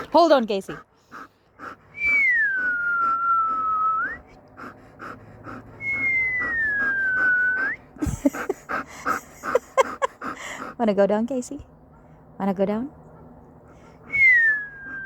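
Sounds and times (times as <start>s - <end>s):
dog panting: 0.0s - 12.4s, 13.0s - 15.0s
person whistling sliding notes: 2.0s - 4.2s, 5.8s - 7.8s, 14.1s - 15.0s.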